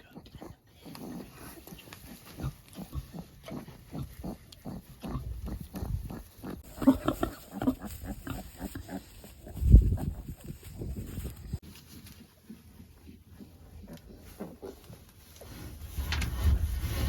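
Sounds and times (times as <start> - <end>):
pigs grunting: 0.0 - 10.3.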